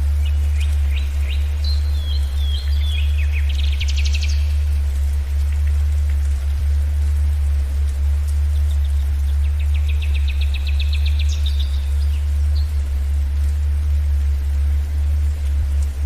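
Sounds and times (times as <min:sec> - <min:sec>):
songbird trilling: 0:00.0 - 0:04.7, 0:08.5 - 0:12.8
faint forest hiss: 0:00.0 - 0:16.0
steady low drone: 0:00.0 - 0:16.0.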